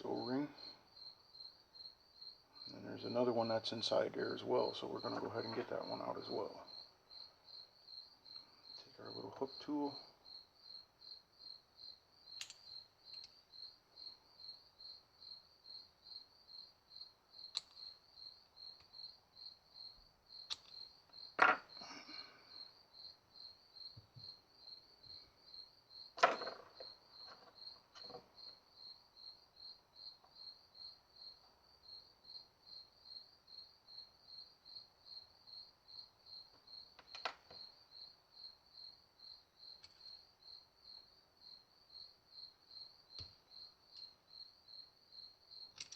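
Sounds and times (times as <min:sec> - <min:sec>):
cricket chirping: 0:00.0 - 0:45.9
pick tool clicking on metal: 0:17.5 - 0:17.8, 0:20.4 - 0:20.8.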